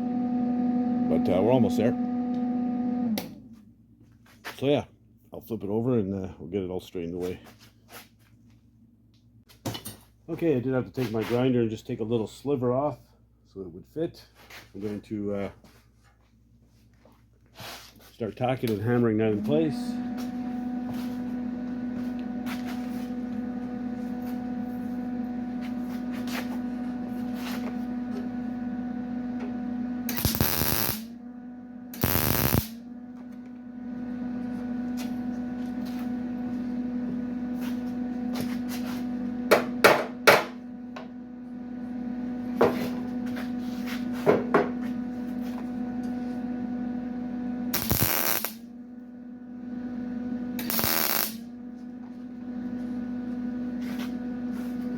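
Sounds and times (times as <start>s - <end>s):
electrical hum: 10.3s - 54.9s
hissing tack welds: 30.1s - 31.1s, 32.0s - 32.8s, 47.7s - 48.6s, 50.6s - 51.4s.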